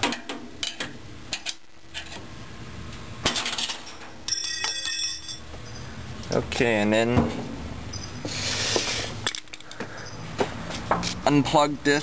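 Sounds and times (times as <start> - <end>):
metallic ringing clatter: 3.5 - 5.9.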